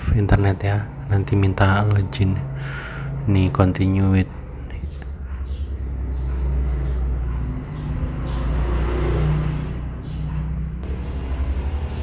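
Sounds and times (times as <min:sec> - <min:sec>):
vehicle engine rumble: 0:00.0 - 0:12.0.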